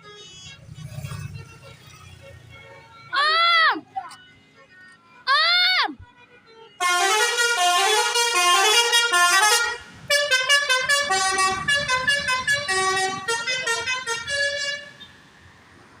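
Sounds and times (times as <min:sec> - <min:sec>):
bus musical horn tune: 0:06.0 - 0:15.1.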